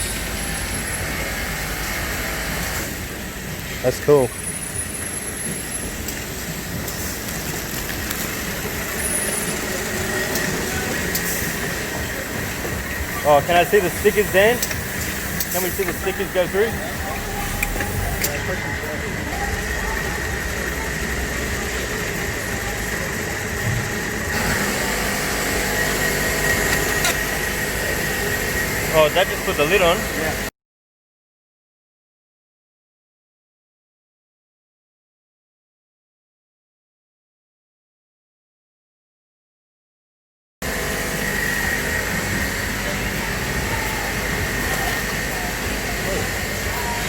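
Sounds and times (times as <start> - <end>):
bottle-filling machinery din: 4.9 - 30.4.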